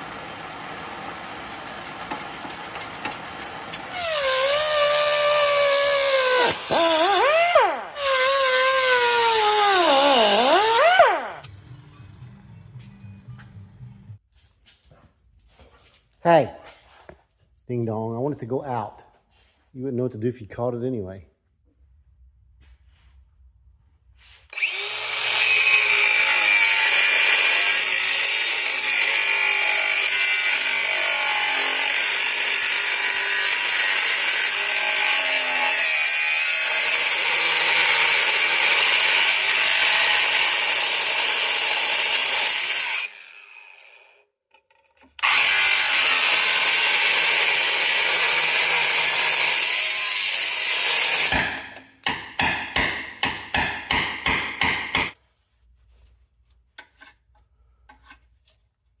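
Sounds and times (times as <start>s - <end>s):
power tool hissing: 0.0s - 11.5s.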